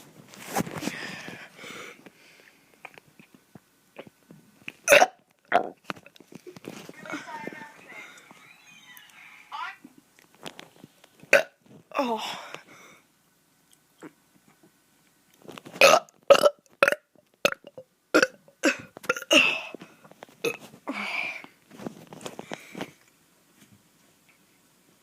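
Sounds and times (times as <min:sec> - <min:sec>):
child burping: 0:04.9 - 0:05.8, 0:15.8 - 0:19.6.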